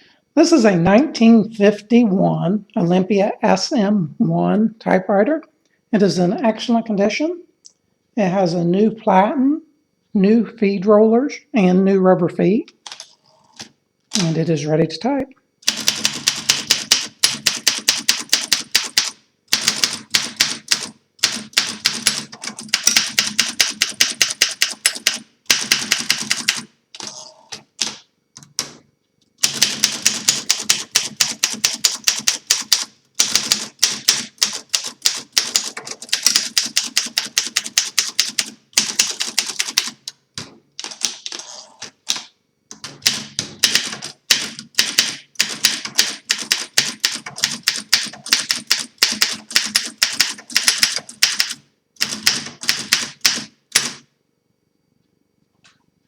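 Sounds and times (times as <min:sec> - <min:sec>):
typewriter key strikes: 0:15.7 - 0:26.6, 0:42.1 - 0:54.0.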